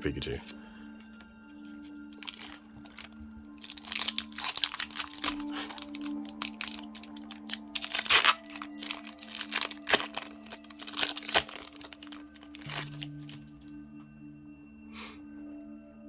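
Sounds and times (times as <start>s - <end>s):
background music: 0.0s - 16.0s
foil wrapper crinkling: 1.2s - 13.7s.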